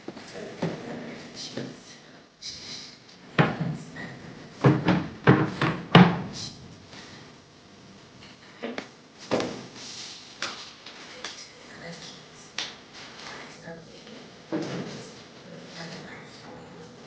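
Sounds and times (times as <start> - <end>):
household knocks and thuds: 4.6 - 6.4.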